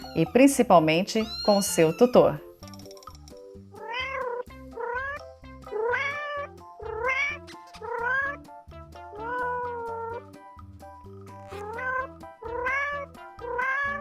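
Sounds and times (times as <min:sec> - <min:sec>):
cat meowing: 0:00.0 - 0:00.4, 0:01.2 - 0:02.4, 0:03.8 - 0:08.4, 0:09.1 - 0:10.2, 0:11.5 - 0:14.0
background music: 0:00.0 - 0:14.0.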